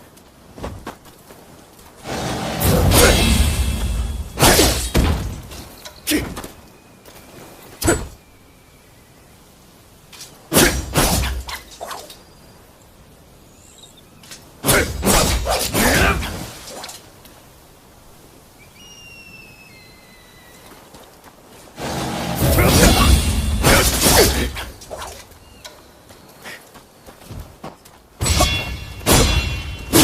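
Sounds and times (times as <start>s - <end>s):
sword strikes and clashes: 2.1s - 5.7s, 10.2s - 12.1s, 21.9s - 25.3s, 28.2s - 30.0s.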